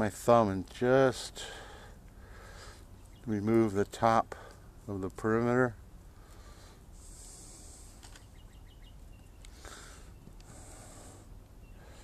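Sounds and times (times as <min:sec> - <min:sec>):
crumbly soil ticks: 0:00.0 - 0:01.4, 0:02.0 - 0:02.2, 0:02.8 - 0:06.5, 0:07.2 - 0:10.6, 0:11.3 - 0:11.6.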